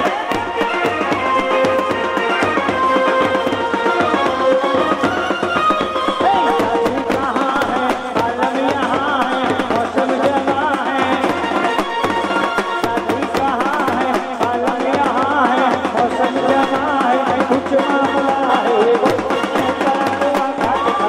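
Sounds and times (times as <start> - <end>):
fast tabla drumming: 0.0 - 21.0
wavering melody line: 6.2 - 8.0.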